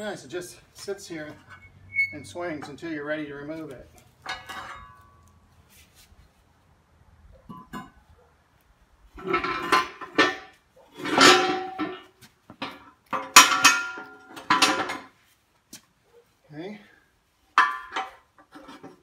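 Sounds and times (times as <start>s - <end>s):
metal bucket scraping and clanking: 1.2s - 3.0s, 4.2s - 5.3s, 9.2s - 15.2s, 17.6s - 19.0s.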